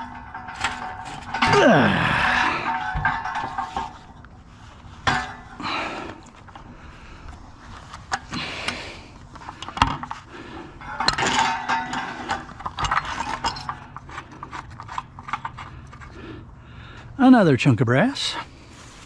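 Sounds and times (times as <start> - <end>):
metal clicks and knocks: 0.0 - 4.3, 9.4 - 16.1
metal scraping: 0.0 - 6.8, 7.5 - 16.4.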